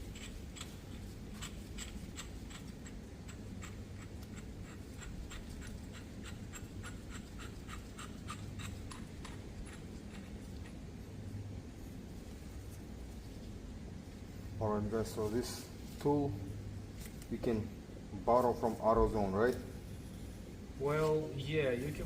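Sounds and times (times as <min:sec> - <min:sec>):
low steady hum: 0:00.0 - 0:22.0
ratchet wrench clicking: 0:00.1 - 0:00.8.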